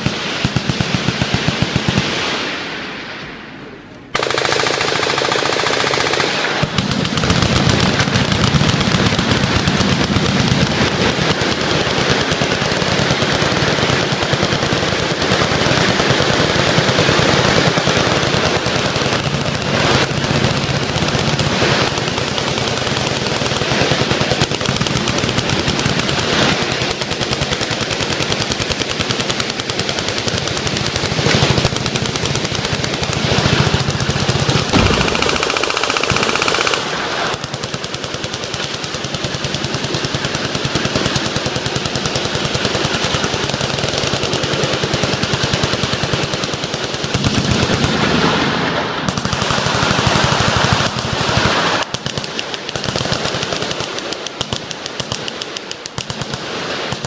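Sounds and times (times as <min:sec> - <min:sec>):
automatic gunfire: 0:00.0 - 0:02.4, 0:04.1 - 0:57.0
loud gunshot reports: 0:34.7 - 0:35.8.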